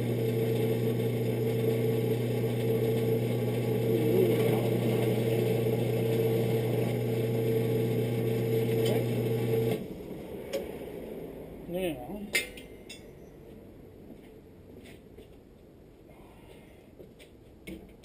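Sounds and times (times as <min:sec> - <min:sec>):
electric drill running: 0:00.0 - 0:09.9.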